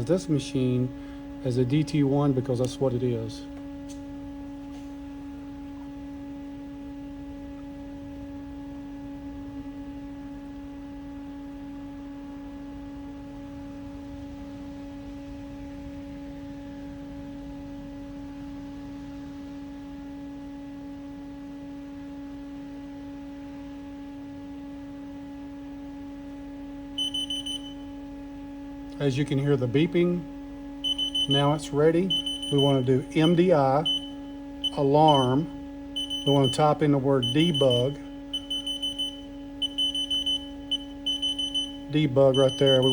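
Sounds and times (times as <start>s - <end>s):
machine electrical hum: 0.0s - 42.9s
machine control beeps: 27.0s - 27.8s, 30.8s - 42.9s.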